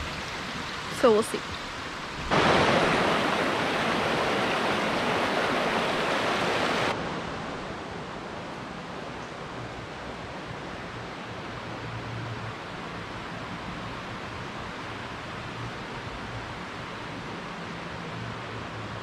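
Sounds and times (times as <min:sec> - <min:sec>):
water rushing: 0:00.0 - 0:09.1.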